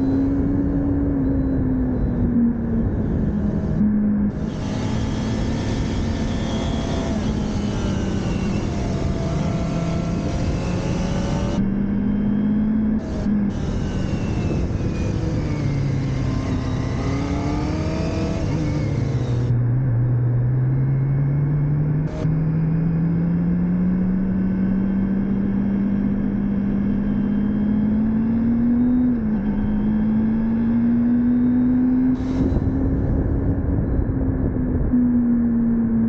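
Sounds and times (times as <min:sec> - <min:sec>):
wind rushing over microphone: 0:00.0 - 0:20.4, 0:31.1 - 0:36.0
motorcycle engine revving: 0:00.0 - 0:36.0.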